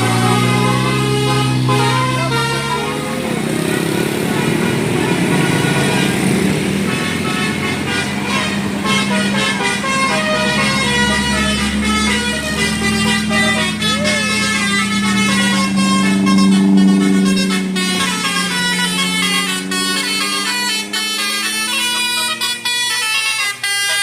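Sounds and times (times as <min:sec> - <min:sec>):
musical air horn tune: 0:00.0 - 0:24.0
people's voices: 0:12.6 - 0:14.7.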